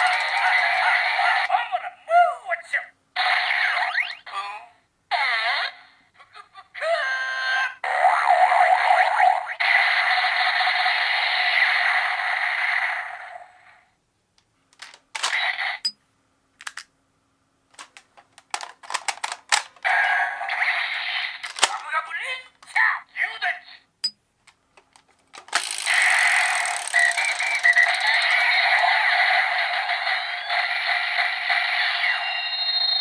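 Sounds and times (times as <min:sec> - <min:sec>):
toy electronic sound effects: 0:00.0 - 0:01.6, 0:03.2 - 0:04.3, 0:25.4 - 0:33.0
plastic clicks: 0:14.4 - 0:15.5, 0:16.6 - 0:16.9, 0:17.7 - 0:19.9, 0:21.4 - 0:21.9, 0:24.0 - 0:28.2.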